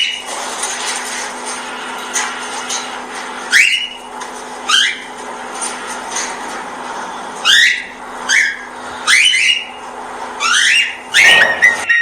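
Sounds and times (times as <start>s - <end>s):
cockatiel contact calls: 11.2s - 11.8s.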